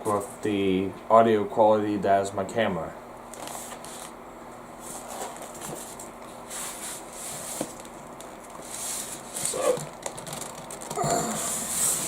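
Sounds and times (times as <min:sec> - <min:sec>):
packaging rustling: 0:03.3 - 0:04.2, 0:05.0 - 0:12.0.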